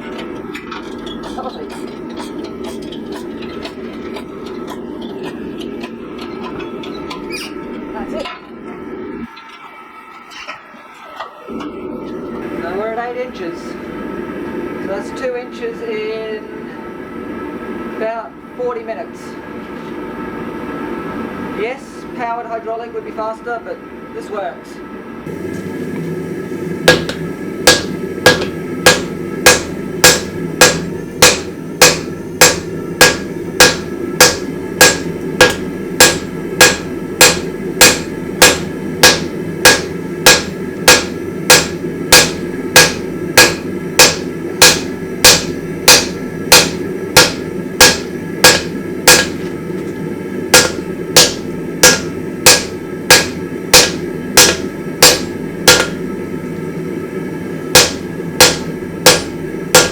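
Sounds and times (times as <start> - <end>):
low hum: 0.0 - 22.2, 24.8 - 59.9
hammer striking steel on anvil: 26.9 - 49.5, 50.5 - 56.0, 57.7 - 59.9.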